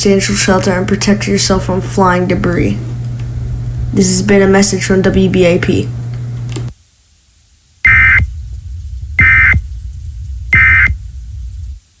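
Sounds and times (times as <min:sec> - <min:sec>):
low hum: 0:00.0 - 0:06.8, 0:07.5 - 0:12.0
buzzy digital data tone bursts: 0:07.8 - 0:12.0.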